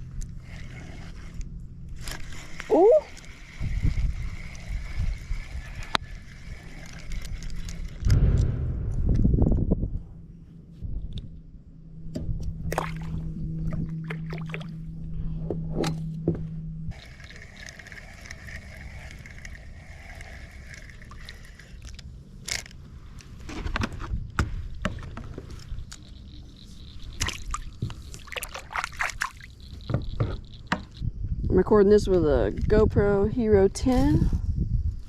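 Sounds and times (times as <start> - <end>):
water sloshing against hull: 12.1 - 22.1, 23.6 - 31.0.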